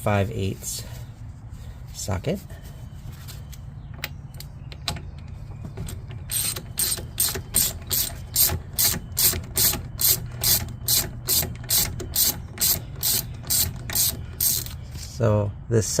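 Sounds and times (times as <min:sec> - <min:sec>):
ratchet wrench clicking: 0:06.2 - 0:14.8.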